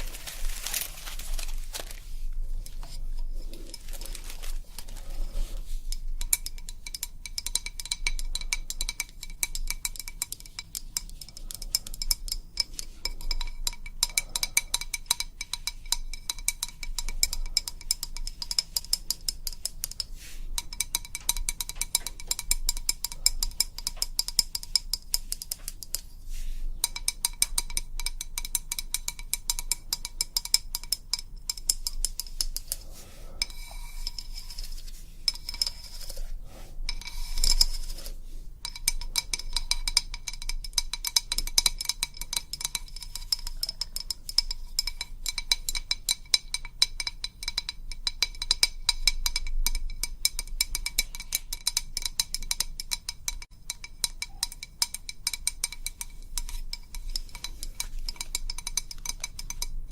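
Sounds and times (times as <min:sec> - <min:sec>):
soft rubbing sound: 0:00.0 - 0:06.1, 0:20.0 - 0:20.6, 0:26.0 - 0:26.7, 0:32.5 - 0:38.6.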